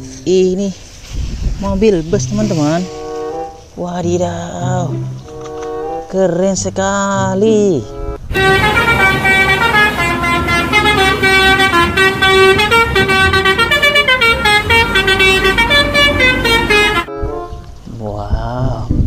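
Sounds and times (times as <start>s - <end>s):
multi-tone bus horn tune: 2.4s - 3.8s, 4.9s - 6.2s, 7.7s - 17.8s.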